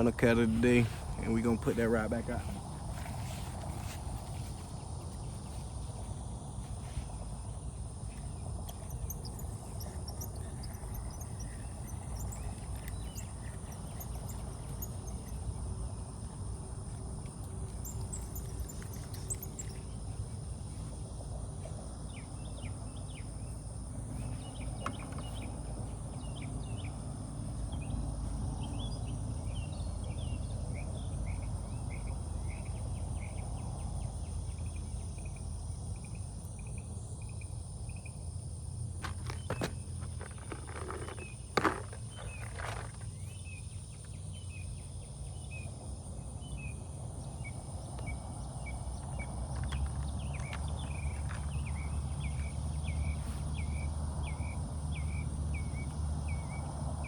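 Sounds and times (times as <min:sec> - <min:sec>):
low steady rumble: 0:00.0 - 0:55.6
insects buzzing: 0:00.0 - 0:57.0
bird chirps: 0:08.2 - 0:15.4.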